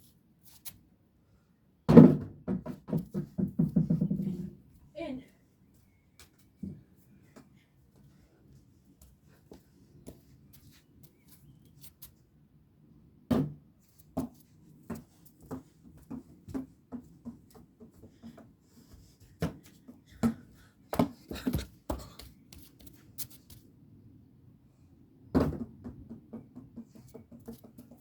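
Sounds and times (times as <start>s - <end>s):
basketball bouncing on hard ground: 19.4s - 22.3s.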